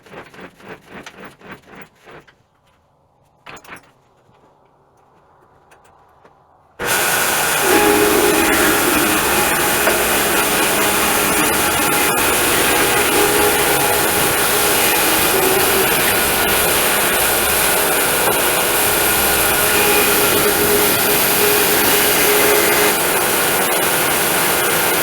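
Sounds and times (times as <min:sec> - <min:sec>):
sawmill motor and blade running: 0:06.8 - 0:25.0.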